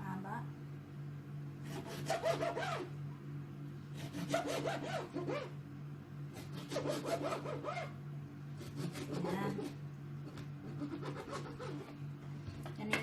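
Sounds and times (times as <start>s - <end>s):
knife sawing through fish: 1.6s - 2.9s, 3.9s - 5.5s, 6.3s - 7.9s, 8.6s - 12.0s.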